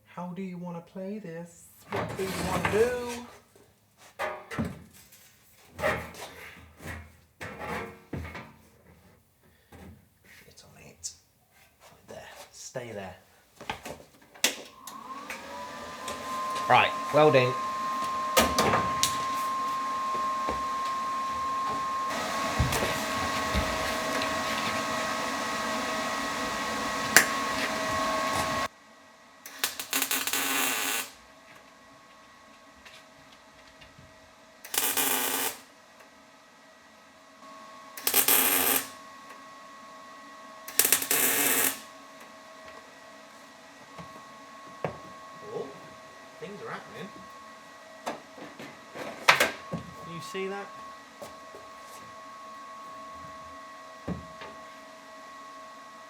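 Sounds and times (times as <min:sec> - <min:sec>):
welding torch hiss bursts: 0:29.5 - 0:31.2, 0:34.7 - 0:35.7, 0:38.0 - 0:39.0, 0:40.7 - 0:41.9.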